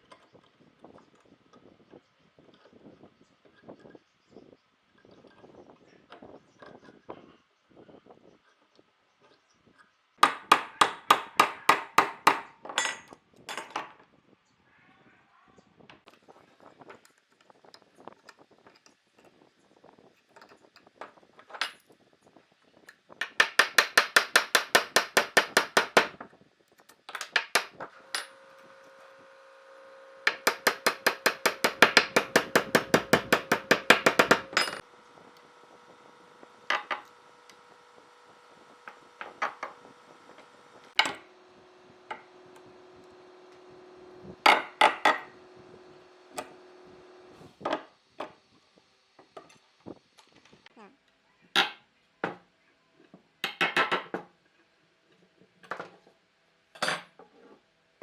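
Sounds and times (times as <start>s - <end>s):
rapid hammering on wood: 10.2s - 12.5s, 23.2s - 26.2s, 30.2s - 34.8s
single hammer knocks: 30.3s - 34.8s.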